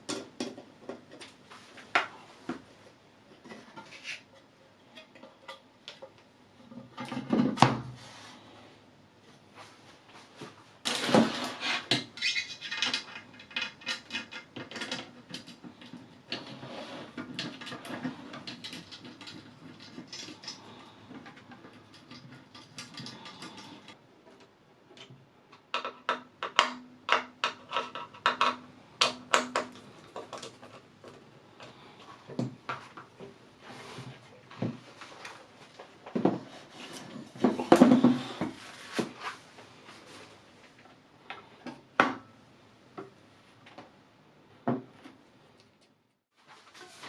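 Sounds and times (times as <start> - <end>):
hard parts clicking and clinking: 10.9 - 24.0.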